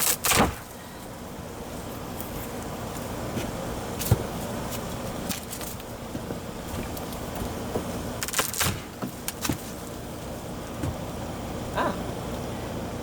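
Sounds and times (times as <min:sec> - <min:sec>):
wood cracking and knocking: 0:05.3 - 0:09.8.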